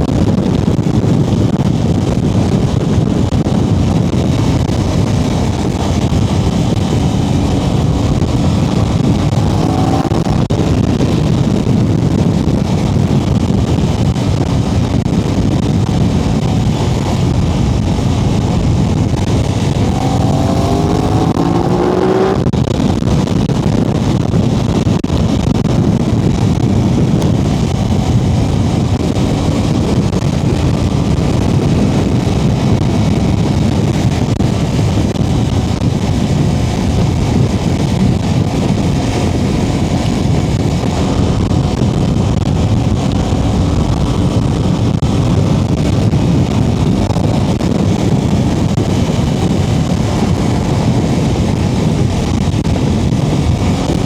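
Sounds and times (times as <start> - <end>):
road noise: 0.0 - 54.0
motorcycle engine accelerating: 2.3 - 24.4, 36.5 - 54.0.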